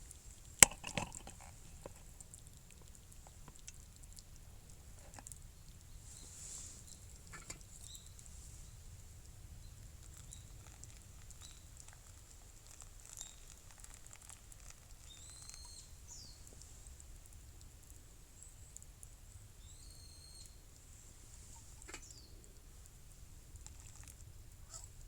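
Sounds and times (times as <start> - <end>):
campfire crackling: 0.0 - 25.0
bird call: 15.1 - 16.4.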